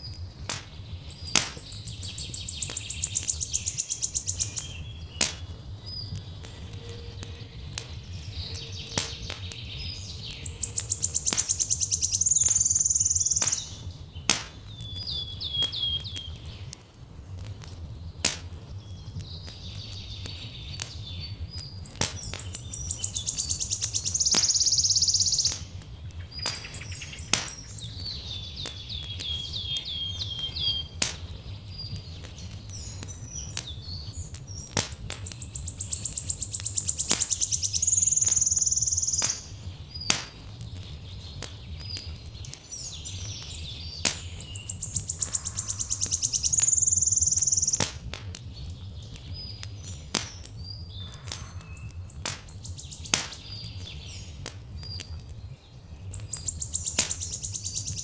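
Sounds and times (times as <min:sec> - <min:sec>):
wood fire crackling: 0:00.0 - 0:58.0
songbird singing trilled phrase: 0:01.1 - 0:05.2, 0:08.2 - 0:14.0, 0:14.8 - 0:16.4, 0:19.3 - 0:31.0, 0:31.8 - 0:40.1, 0:41.6 - 0:47.8, 0:49.2 - 0:55.2, 0:56.0 - 0:58.0.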